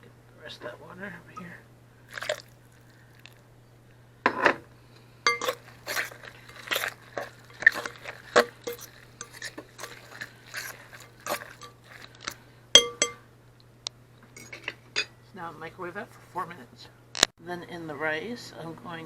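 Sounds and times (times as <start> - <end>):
spoon stirring in a bowl: 2.1 - 3.4, 5.2 - 13.2, 14.4 - 15.1
spoon clinking against bowl: 5.3 - 6.9, 7.6 - 12.1, 12.8 - 13.2.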